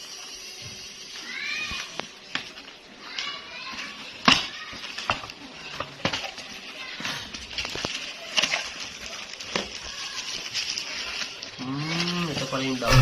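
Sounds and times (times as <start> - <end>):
packaging rustling: 4.8 - 13.0.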